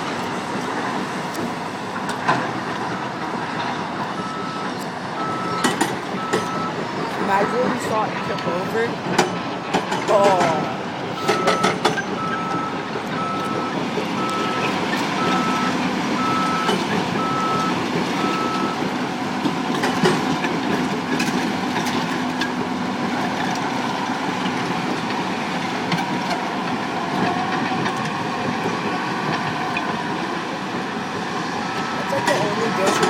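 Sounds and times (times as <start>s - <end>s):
heavy machinery rumble: 0.0s - 33.0s
reversing alarm beeping: 4.0s - 8.7s, 11.1s - 18.9s, 31.6s - 33.0s.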